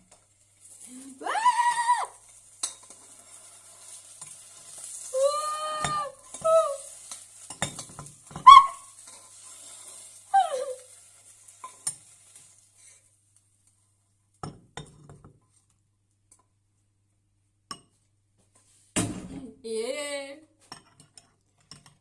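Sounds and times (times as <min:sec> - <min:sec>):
faint hiss: 0:00.0 - 0:13.8
utensils clinking against a pot: 0:02.6 - 0:03.3, 0:07.1 - 0:09.4, 0:20.7 - 0:22.0.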